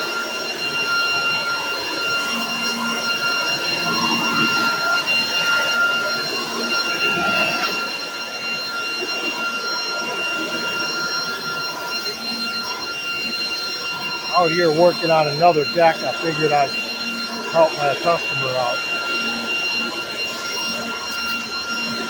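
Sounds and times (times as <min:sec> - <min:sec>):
leaf blower running: 0:14.0 - 0:22.0.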